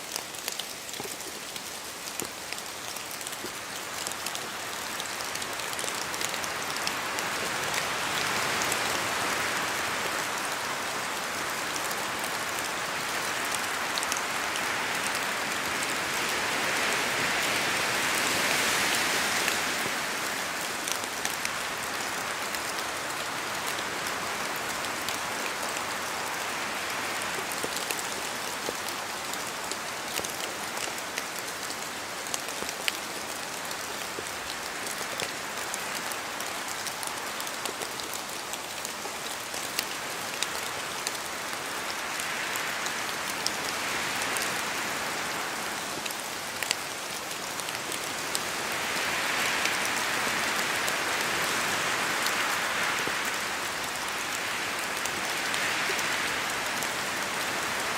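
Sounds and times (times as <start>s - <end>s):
drops ticking from trees: 0.0s - 7.0s
steady rain falling: 0.0s - 57.9s
wind through leaves: 0.0s - 57.9s.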